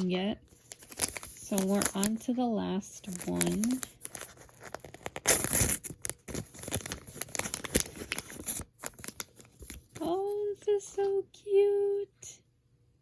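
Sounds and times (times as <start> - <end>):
packaging tearing and crinkling: 0.6 - 2.2, 3.0 - 10.2.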